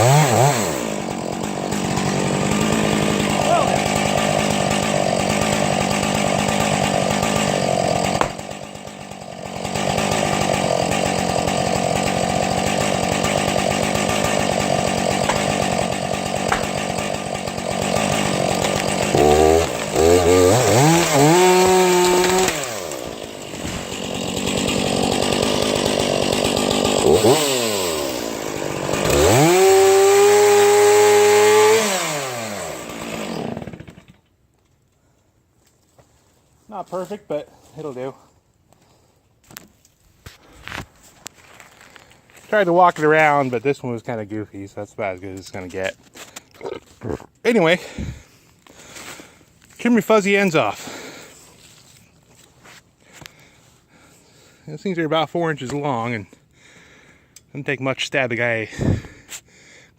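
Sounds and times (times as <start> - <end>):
chainsaw cutting wood: 0.0 - 34.4, 47.8 - 54.5, 58.7 - 59.5.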